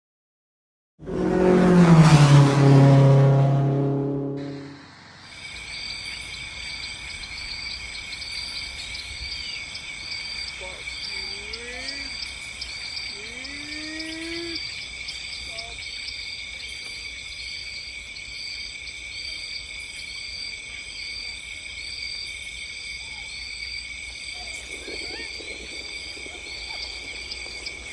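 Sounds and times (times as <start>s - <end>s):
insects buzzing and chirping: 5.1s - 27.9s
low sliding calls: 24.4s - 27.9s.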